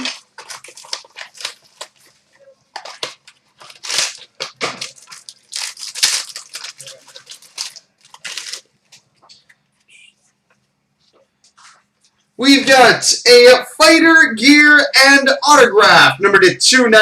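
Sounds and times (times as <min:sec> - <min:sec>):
card pack wrapper tearing and crinkling: 0:00.0 - 0:02.2, 0:02.8 - 0:08.7.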